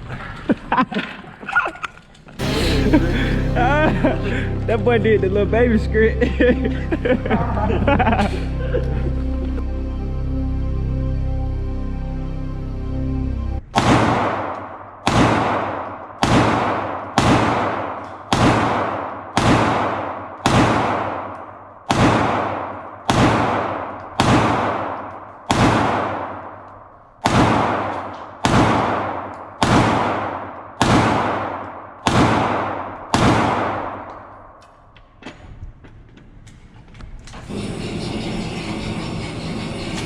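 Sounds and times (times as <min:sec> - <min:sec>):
handgun shots echoing: 0:13.8 - 0:34.6.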